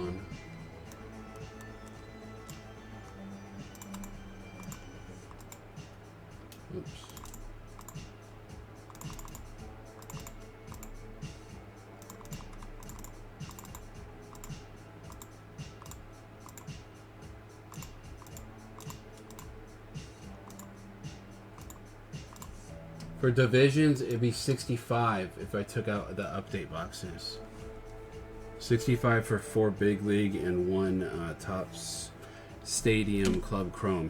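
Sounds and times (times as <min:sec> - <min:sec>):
faint background music: 0:00.0 - 0:34.0
steady low hum: 0:00.0 - 0:34.0
computer keyboard key clicks: 0:03.7 - 0:05.6, 0:06.5 - 0:08.1, 0:08.9 - 0:11.0, 0:12.0 - 0:16.8, 0:17.7 - 0:19.6, 0:21.6 - 0:22.6.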